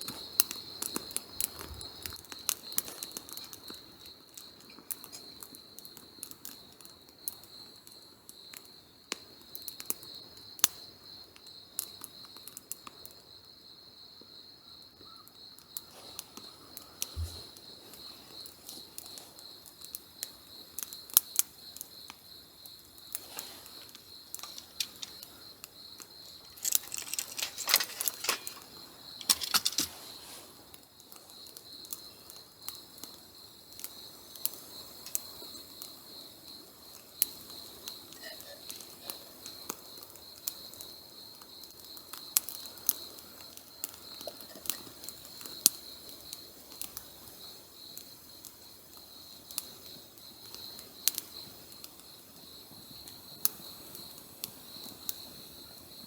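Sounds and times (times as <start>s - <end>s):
campfire crackling and popping: 0.0s - 10.8s, 17.6s - 52.0s
insects chirring: 0.0s - 56.0s.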